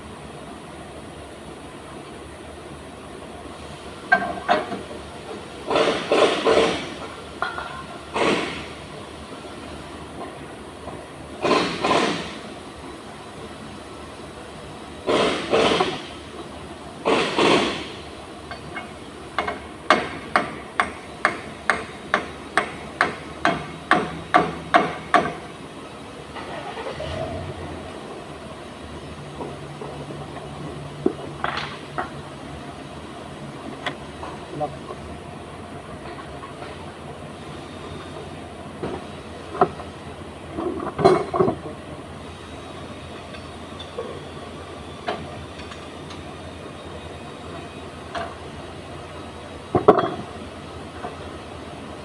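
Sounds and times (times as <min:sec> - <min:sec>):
steady background noise: 0:00.0 - 0:52.0
metal clanks and knocks: 0:05.7 - 0:08.4, 0:40.6 - 0:41.8, 0:49.7 - 0:50.4.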